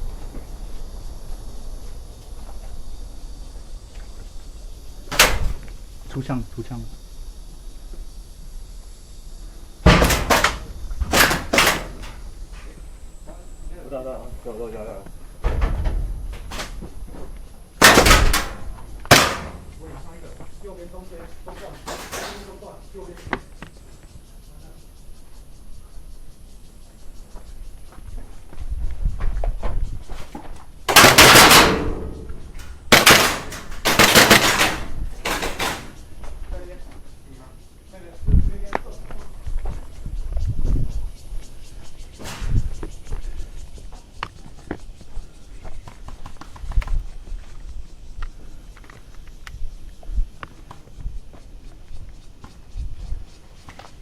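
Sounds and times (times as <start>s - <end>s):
airsoft guns full-auto fire: 9.8s - 12.1s, 17.8s - 19.7s, 30.9s - 35.9s
dull low thumps: 15.1s - 17.8s.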